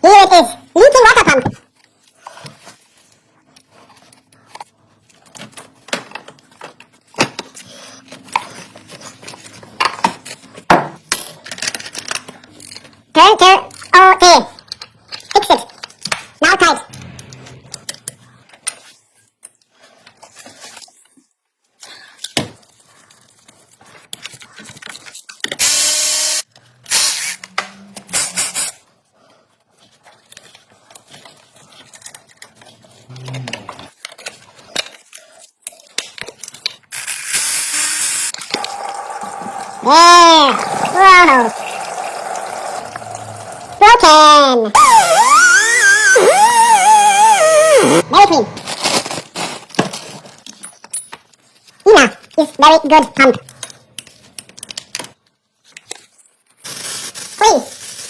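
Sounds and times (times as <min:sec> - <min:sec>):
tools and parts clicking: 0:11.1 - 0:13.0, 0:50.2 - 0:51.5
power tool running: 0:38.2 - 0:39.9, 0:40.5 - 0:43.8, 0:44.8 - 0:48.0.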